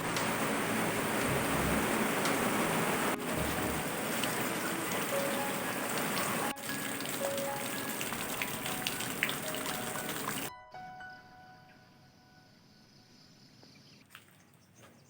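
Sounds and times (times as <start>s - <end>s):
steady rain falling: 0.0s - 10.5s.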